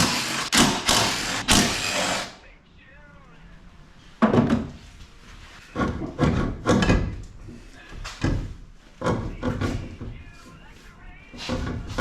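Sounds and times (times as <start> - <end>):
knocks and clunks on metal parts: 4.2 - 4.8, 5.8 - 7.6, 8.2 - 10.2.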